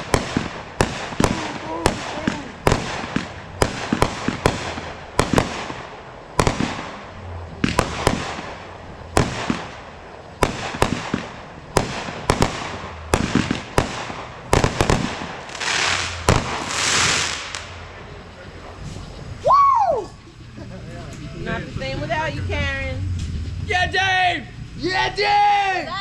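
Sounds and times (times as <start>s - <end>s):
fireworks bangs: 0.0s - 19.5s
fireworks hissing: 0.0s - 26.0s.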